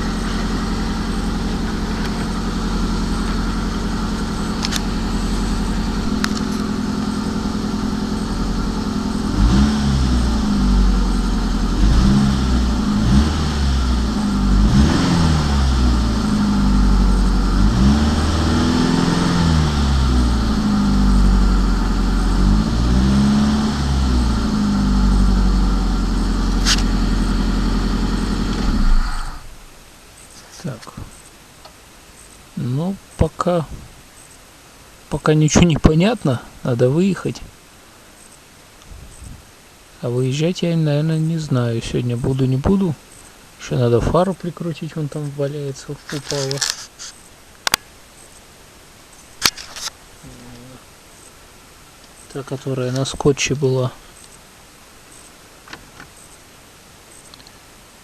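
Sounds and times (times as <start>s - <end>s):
car engine idling and revving: 0.0s - 29.8s.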